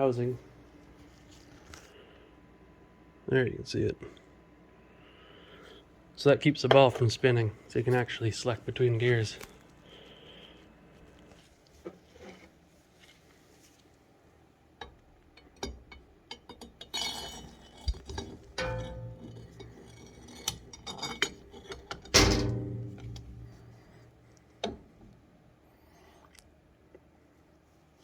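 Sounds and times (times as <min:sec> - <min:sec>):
metal clinks and knocks: 0:15.6 - 0:24.0.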